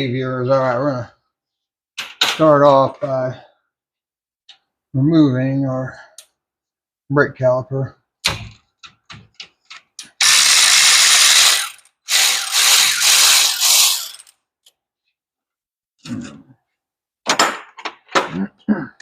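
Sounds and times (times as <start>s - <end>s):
ratchet clicking: 10.2s - 14.3s
metal parts clacking: 12.5s - 14.3s.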